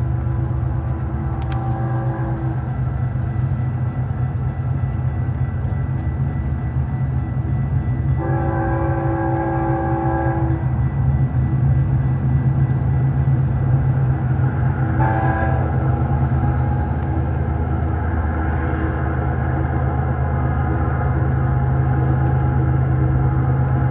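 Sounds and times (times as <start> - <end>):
locomotive horn blast: 0.0 - 2.9, 8.1 - 10.8, 14.8 - 17.0
locomotive engine rumble: 0.0 - 23.9.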